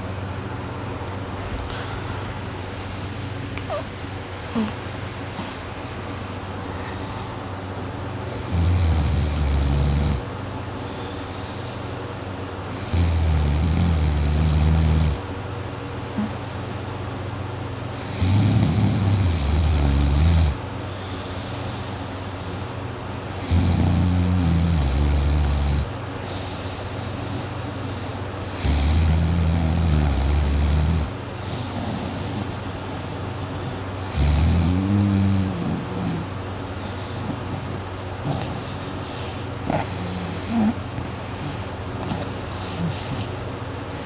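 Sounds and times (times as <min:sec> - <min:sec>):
steady low hum: 0:00.0 - 0:44.0
man snoring loudly: 0:08.4 - 0:10.2, 0:12.8 - 0:15.2, 0:18.1 - 0:20.6, 0:23.4 - 0:25.9, 0:28.5 - 0:32.7, 0:33.4 - 0:36.3.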